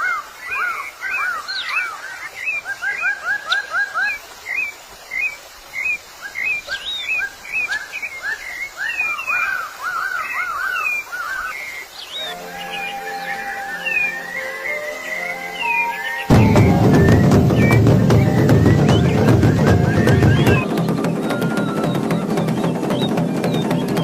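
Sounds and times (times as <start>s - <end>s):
bird whistling short notes: 12.2s - 24.0s.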